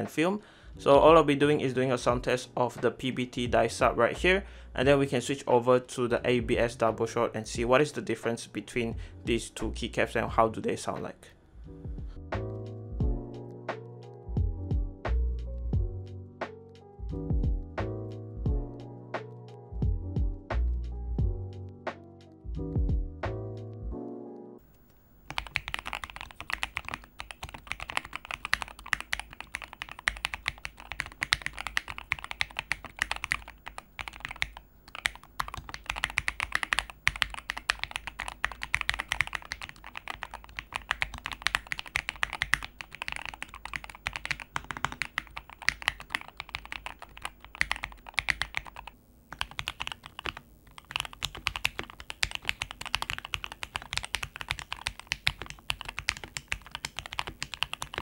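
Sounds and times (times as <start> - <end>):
fast typing on mechanical keyboard: 25.3 - 58.0.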